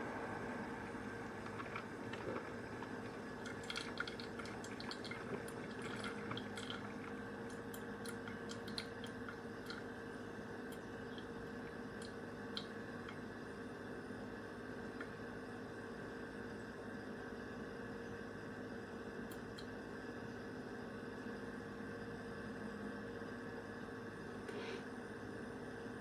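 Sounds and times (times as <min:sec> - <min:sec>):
coffee maker humming: 0:00.0 - 0:26.0
coffee dripping into carafe: 0:00.8 - 0:13.3.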